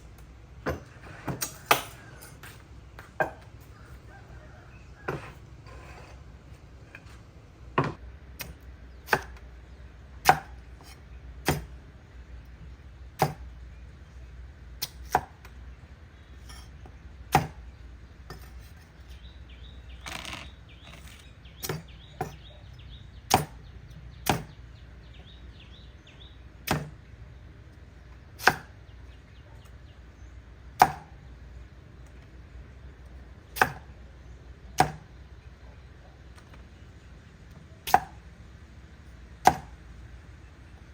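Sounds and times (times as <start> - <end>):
blade chopping on chopping block: 7.8 - 9.4, 10.2 - 11.7, 13.2 - 13.5, 14.8 - 15.4, 17.3 - 17.6, 21.6 - 22.5, 23.2 - 24.6, 26.6 - 27.0, 28.4 - 28.8, 30.8 - 31.1, 33.6 - 33.9, 34.8 - 35.1, 37.8 - 38.2, 39.4 - 39.8.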